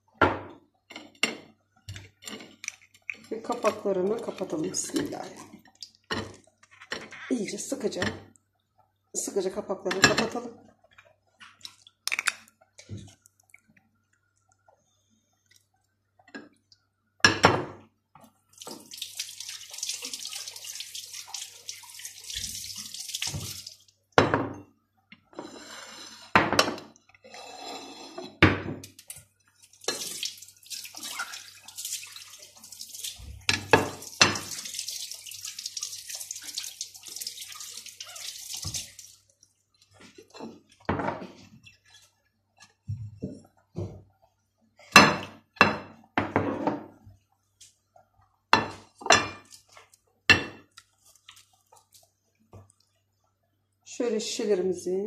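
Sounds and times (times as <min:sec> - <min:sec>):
water running from tap: 0:03.0 - 0:06.6, 0:18.5 - 0:24.0, 0:28.9 - 0:40.9.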